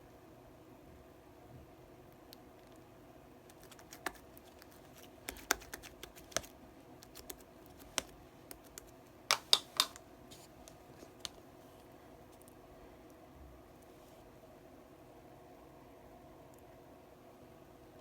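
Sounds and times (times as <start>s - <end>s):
sharp clicks and taps: 3.5s - 10.0s.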